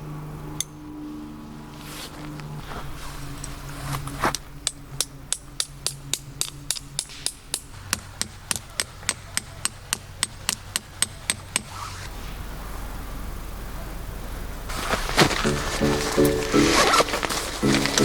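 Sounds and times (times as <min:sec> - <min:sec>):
hammer striking metal stake: 0:04.6 - 0:11.7.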